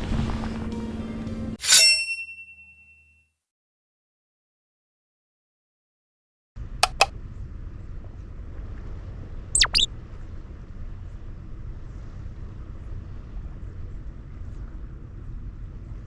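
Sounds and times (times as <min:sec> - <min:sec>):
short squeaky chirps: 0:09.6 - 0:09.9.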